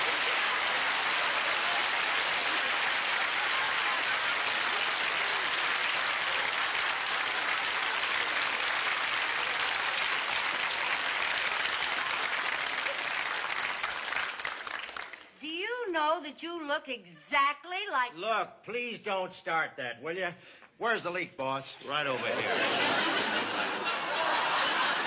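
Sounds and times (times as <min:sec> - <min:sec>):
audience applauding: 0:00.0 - 0:15.4, 0:22.2 - 0:25.0.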